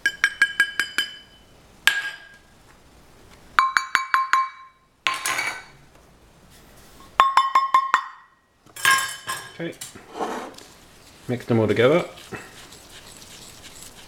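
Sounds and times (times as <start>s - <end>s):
metal utensil clinking on glass bowl: 8.8s - 9.6s
scraping swish of stirring: 10.0s - 14.0s.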